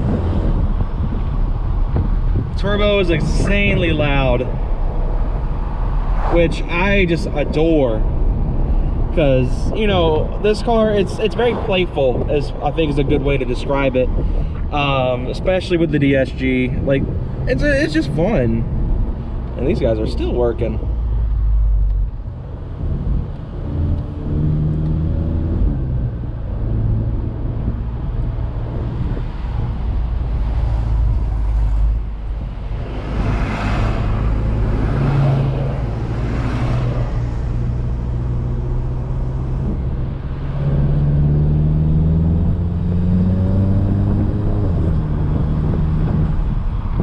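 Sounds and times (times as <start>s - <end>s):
car engine accelerating through gears: 21.2s - 47.0s.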